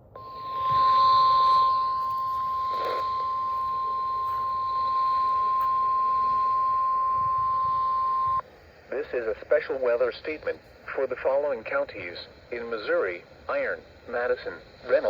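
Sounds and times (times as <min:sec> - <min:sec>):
steady warning alarm tone: 0:00.0 - 0:08.4
faint radio hiss: 0:00.0 - 0:15.0.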